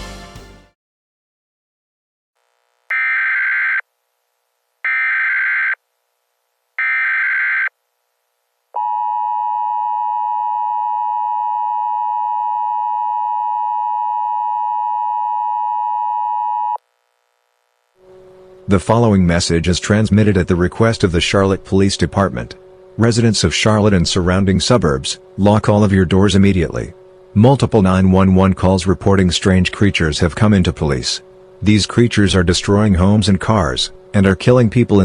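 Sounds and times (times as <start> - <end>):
data header tone bursts: 2.9 - 3.8.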